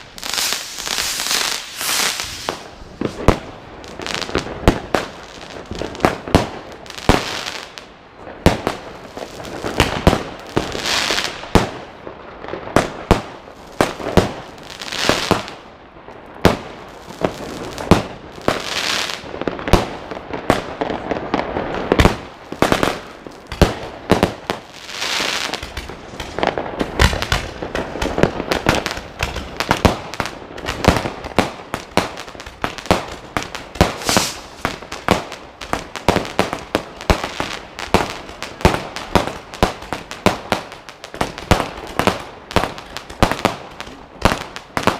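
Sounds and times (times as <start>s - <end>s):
crackling hissing firework bursts: 0.0s - 7.9s, 21.4s - 44.9s
firecrackers banging: 0.0s - 12.0s, 17.3s - 44.9s.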